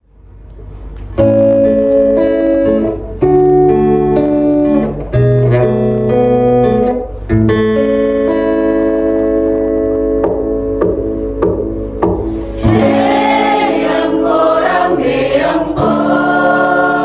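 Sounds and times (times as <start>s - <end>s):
sustained instrumental chords: 11.7s - 17.0s.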